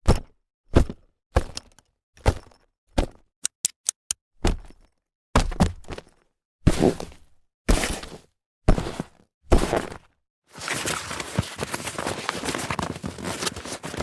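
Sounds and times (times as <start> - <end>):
sharp clicks: 3.4 - 4.2.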